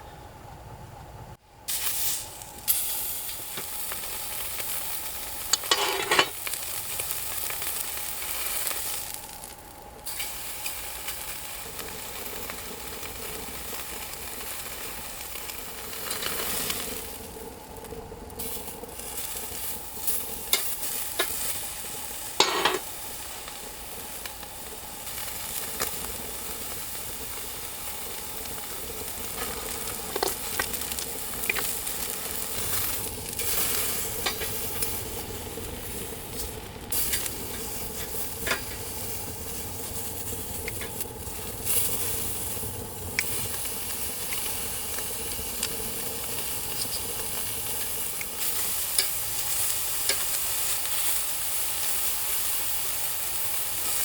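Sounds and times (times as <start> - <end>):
food sizzling in a pan: 1.7 - 54.0
utensil scraping a pan: 5.5 - 6.3, 22.4 - 22.8.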